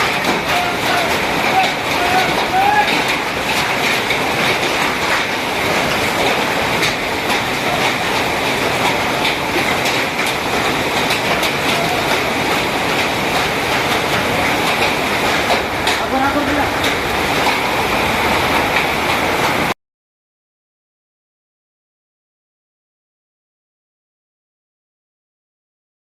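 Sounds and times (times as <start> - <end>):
hailstones striking: 0.0 - 19.7
heavy downpour rushing: 0.0 - 19.8.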